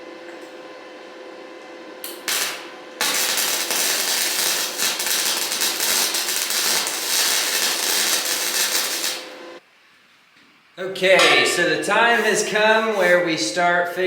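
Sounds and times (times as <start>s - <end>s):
welding arc crackling: 2.1s - 9.6s, 11.6s - 13.5s.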